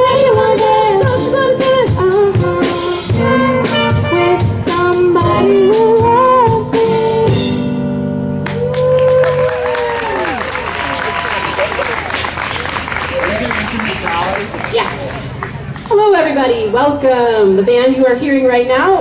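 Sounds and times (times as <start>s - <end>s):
female singer: 0.0s - 7.4s
drums: 0.0s - 7.8s
live band playing: 0.0s - 17.5s.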